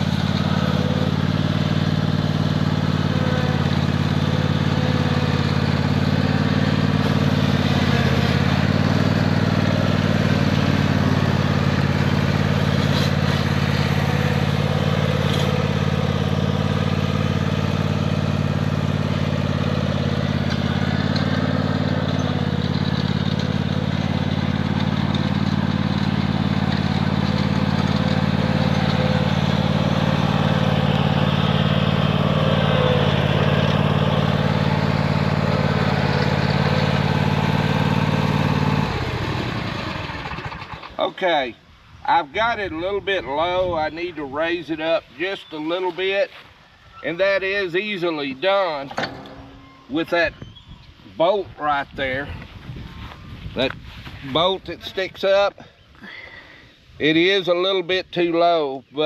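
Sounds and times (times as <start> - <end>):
string trimmer working: 0.0 - 41.0
riding lawnmower engine: 0.0 - 59.0.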